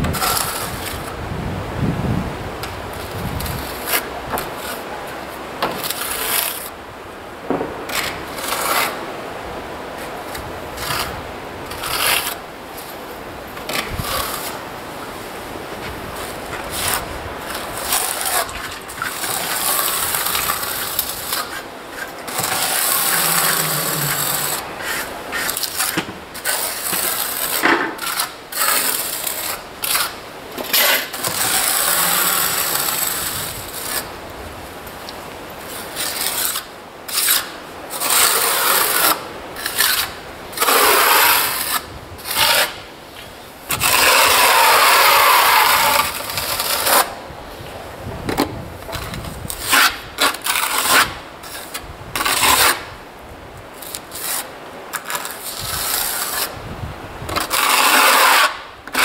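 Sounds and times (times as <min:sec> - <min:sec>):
hand tool scraping a wall: 0:00.0 - 0:01.2, 0:05.6 - 0:06.7, 0:07.9 - 0:09.0, 0:10.0 - 0:13.0, 0:13.6 - 0:34.2, 0:35.6 - 0:42.8, 0:43.7 - 0:47.2, 0:48.8 - 0:52.9, 0:53.8 - 0:56.6, 0:57.3 - 0:59.0.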